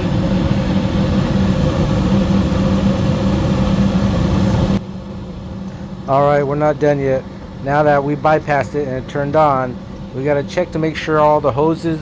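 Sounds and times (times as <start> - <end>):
gas furnace rushing: 0.0 - 12.0
low hum: 0.0 - 12.0.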